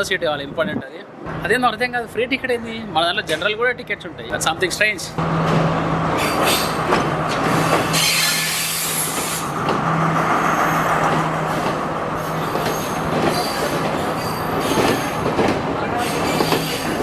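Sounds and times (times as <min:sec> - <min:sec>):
diesel train engine hum: 0:01.2 - 0:17.0
train wheels on tracks: 0:04.3 - 0:17.0.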